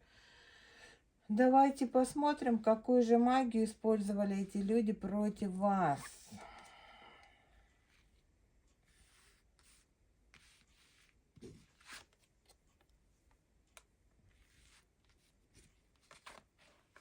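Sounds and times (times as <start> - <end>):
cards rustling and sliding: 14.4 - 17.0.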